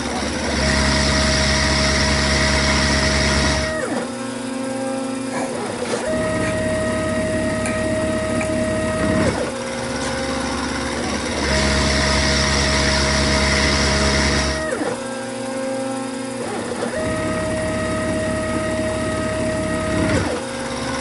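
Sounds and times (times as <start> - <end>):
milling machine whine: 0.0 - 21.0.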